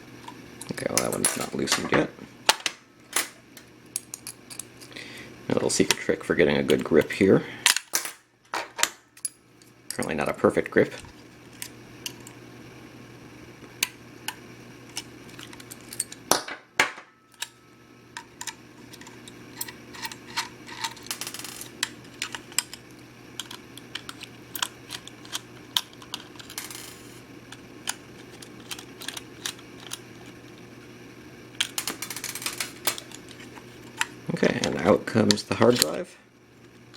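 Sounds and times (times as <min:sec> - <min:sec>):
screwdriver clicking on metal screws: 0:18.2 - 0:26.8, 0:27.5 - 0:30.3.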